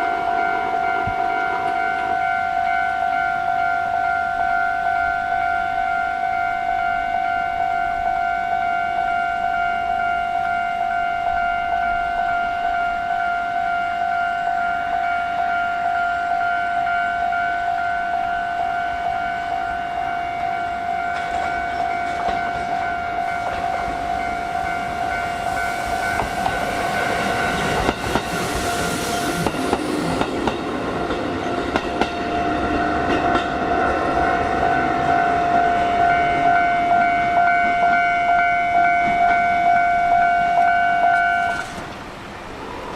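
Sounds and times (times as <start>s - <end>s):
level crossing alarm pulsing: 0.0s - 41.7s
electric train passing: 0.0s - 42.9s
wheels clacking over rail joints: 21.0s - 35.6s.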